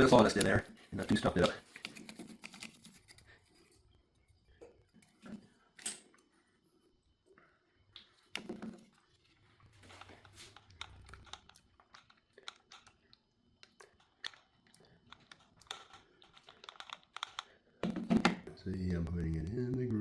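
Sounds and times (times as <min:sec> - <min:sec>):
small clicks and rattles of handling: 0:00.0 - 0:03.7, 0:09.8 - 0:18.4.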